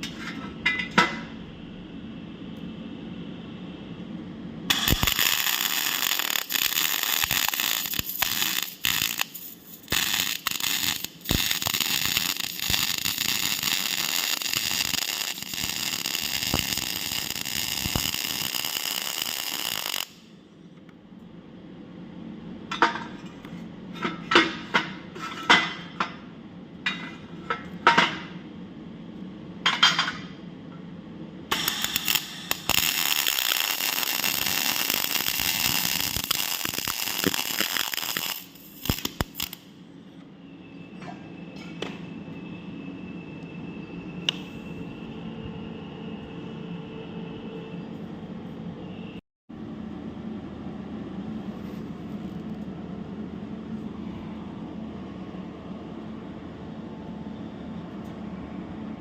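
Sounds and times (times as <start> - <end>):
arc welding crackling hiss: 4.7 - 20.2, 31.5 - 39.6.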